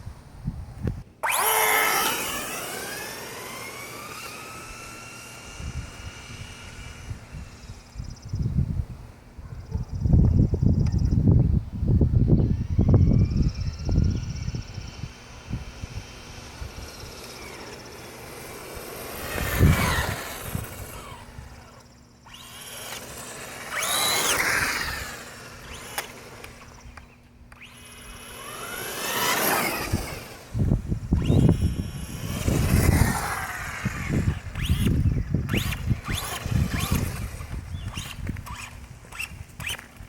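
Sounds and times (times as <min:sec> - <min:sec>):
electric motor and gears whining: 0:00.7 - 0:08.8, 0:12.2 - 0:40.0.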